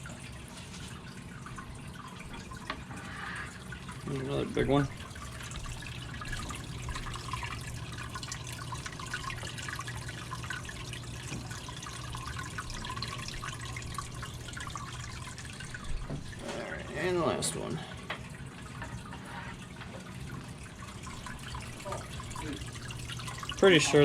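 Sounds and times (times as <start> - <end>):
fish tank water bubbling: 0.0 - 24.0
low steady hum: 0.0 - 24.0.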